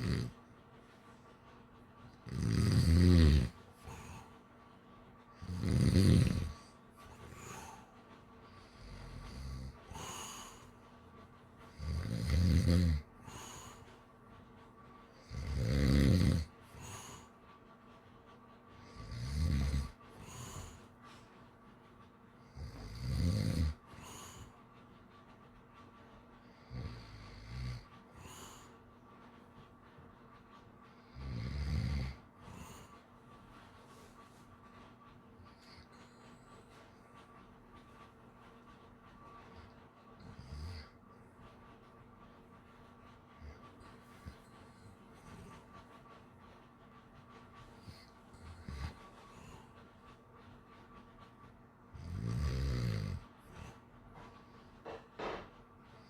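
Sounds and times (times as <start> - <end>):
loud low snore: 0.0 - 0.3, 2.3 - 3.6, 5.4 - 6.6, 11.8 - 13.0, 15.3 - 16.5.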